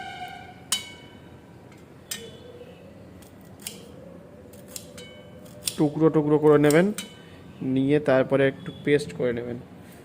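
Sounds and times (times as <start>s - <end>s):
metal blade cutting ginger: 3.2s - 7.2s.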